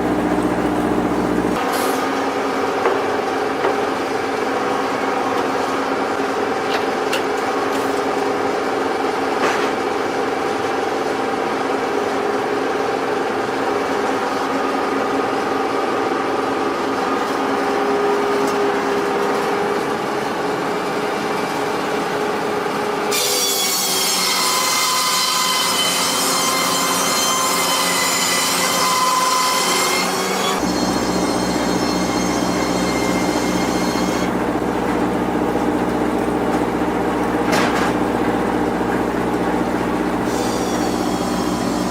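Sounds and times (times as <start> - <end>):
sawmill saw cutting wood: 0.0 - 9.9, 13.9 - 41.9
high ringing saw whine: 23.1 - 34.3, 40.2 - 41.9.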